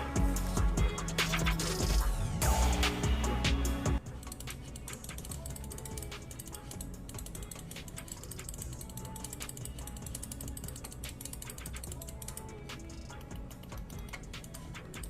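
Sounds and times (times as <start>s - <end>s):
background music with steady beat: 0.0s - 15.0s
rapid mechanical clicks: 4.0s - 15.0s.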